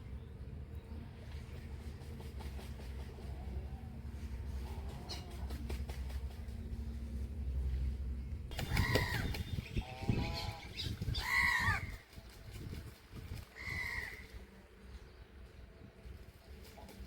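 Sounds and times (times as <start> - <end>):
low rumble: 0.0 - 16.5
harsh bird calls: 8.5 - 12.0, 13.6 - 14.3.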